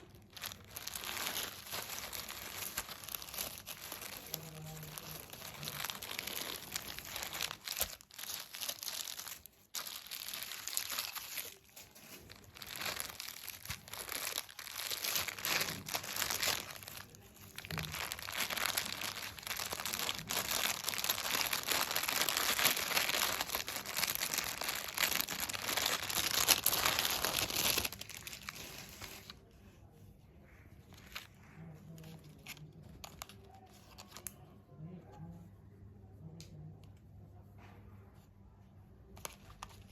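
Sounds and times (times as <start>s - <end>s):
plastic packaging crinkling: 0.0s - 29.5s.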